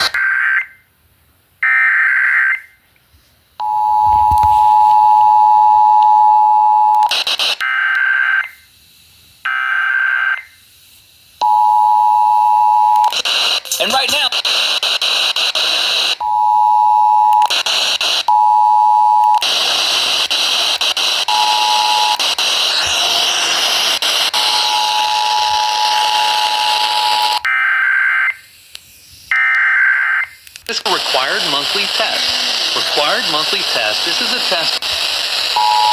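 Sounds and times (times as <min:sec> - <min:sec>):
radio static: 0:00.0 - 0:00.2, 0:13.0 - 0:16.2, 0:19.4 - 0:27.4, 0:30.7 - 0:35.9
burst of noise: 0:19.4 - 0:27.4, 0:30.7 - 0:35.7
screeching data bursts: 0:19.4 - 0:27.5, 0:30.7 - 0:35.9
warbling digital data bursts: 0:21.4 - 0:27.4.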